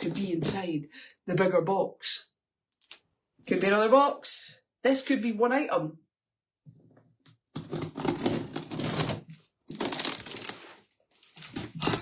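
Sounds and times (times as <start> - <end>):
cardboard packaging ripping: 7.6 - 12.0.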